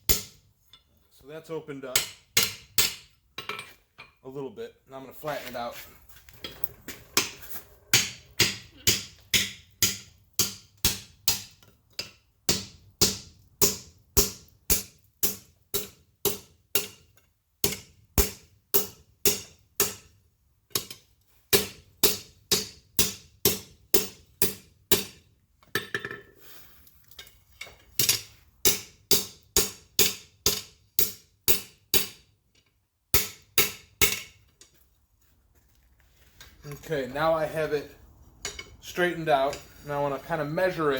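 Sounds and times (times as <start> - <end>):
hammer striking iron on anvil: 0.0 - 0.4, 1.9 - 3.7, 7.9 - 20.1, 20.8 - 25.2, 28.0 - 32.2, 33.1 - 34.4.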